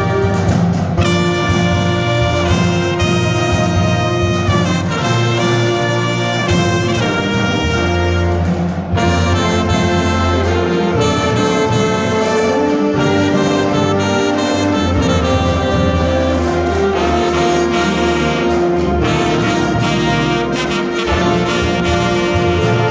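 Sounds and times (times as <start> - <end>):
brass band playing chords: 0.0 - 22.9.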